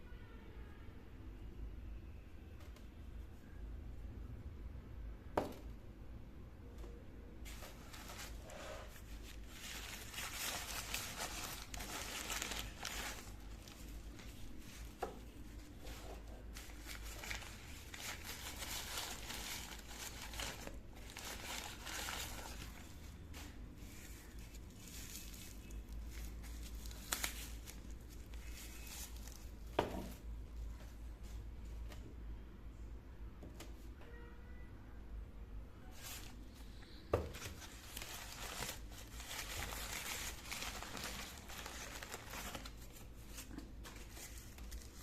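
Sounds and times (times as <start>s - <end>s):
plastic packaging crinkling: 7.5s - 30.2s, 37.3s - 45.0s.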